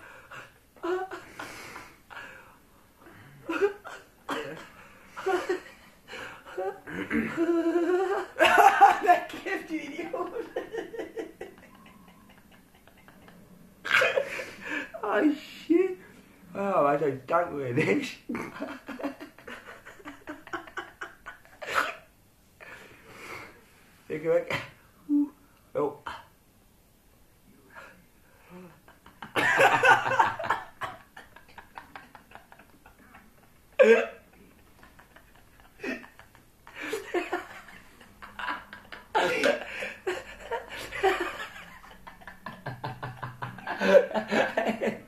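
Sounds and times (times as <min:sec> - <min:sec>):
people laughing: 0:03.5 - 0:14.9, 0:18.4 - 0:22.0, 0:28.6 - 0:45.0.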